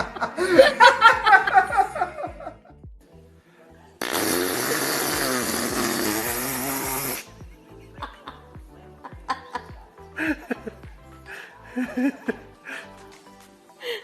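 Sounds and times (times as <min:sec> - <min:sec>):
laughter: 0:00.0 - 0:02.8, 0:07.5 - 0:10.8, 0:11.8 - 0:12.4
loud raspy fart: 0:04.0 - 0:07.3.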